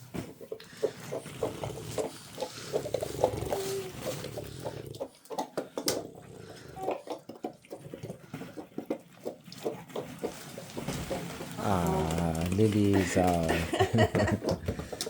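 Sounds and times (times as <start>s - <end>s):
plastic balls clattering: 10.0s - 15.0s.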